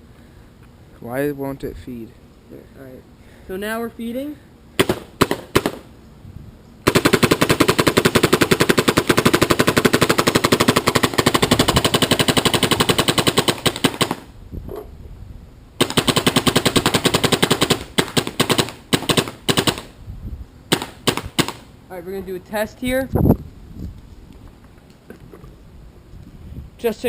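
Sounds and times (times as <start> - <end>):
paintball marker firing: 4.8 - 5.9, 6.9 - 14.3, 15.8 - 19.9, 20.7 - 21.7.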